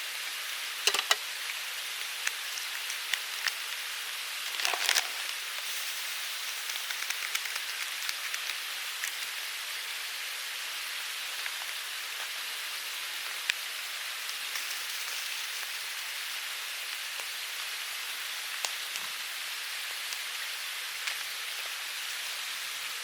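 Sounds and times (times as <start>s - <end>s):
campfire crackling and popping: 0.8s - 9.4s, 16.9s - 17.4s, 19.9s - 22.4s.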